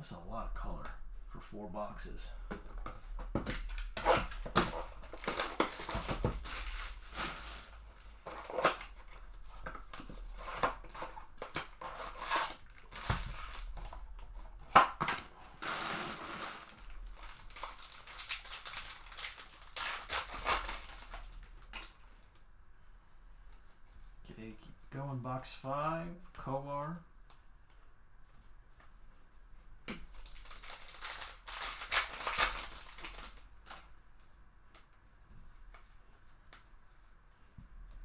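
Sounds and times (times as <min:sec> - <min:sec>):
wrappers and cardboard crinkling: 0:02.3 - 0:22.5, 0:30.0 - 0:37.0.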